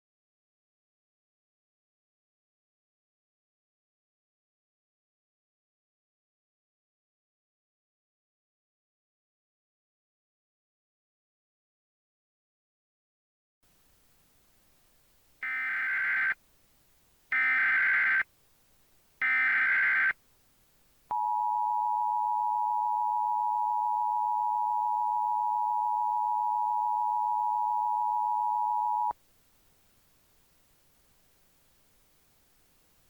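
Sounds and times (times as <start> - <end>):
two-tone alert signal: 21.1 - 29.1.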